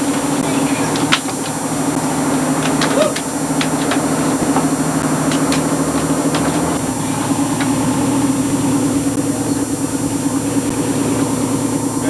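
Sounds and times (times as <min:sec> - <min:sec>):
boat engine droning: 0:00.0 - 0:12.0.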